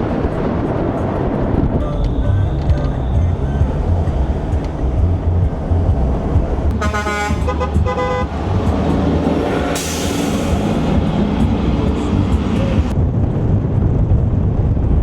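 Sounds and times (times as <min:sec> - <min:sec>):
vehicle rumbling on road: 0:00.0 - 0:15.0
vehicle horn toots: 0:01.8 - 0:05.0, 0:06.7 - 0:08.7
short rush of hiss: 0:09.7 - 0:10.9.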